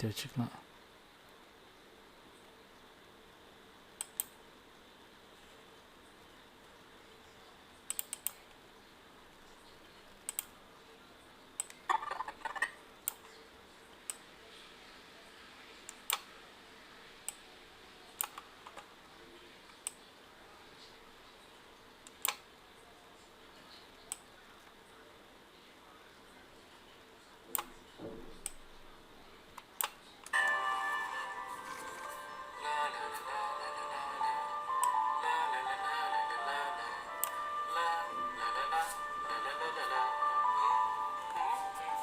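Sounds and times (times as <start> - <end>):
faint steady hiss: 0.0 - 11.9, 12.8 - 42.0
computer mouse clicks: 4.0 - 4.4, 7.9 - 8.6, 10.2 - 10.6, 13.0 - 13.4, 15.9 - 16.3, 22.1 - 22.4.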